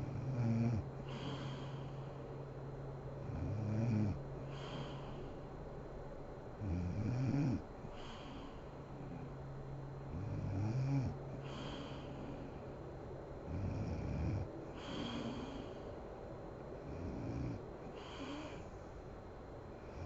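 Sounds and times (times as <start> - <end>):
woman snoring: 0.0 - 2.1, 3.2 - 5.4, 6.6 - 9.3, 10.2 - 12.6, 13.4 - 15.9, 16.8 - 18.7
soft hissing breath: 0.8 - 20.0.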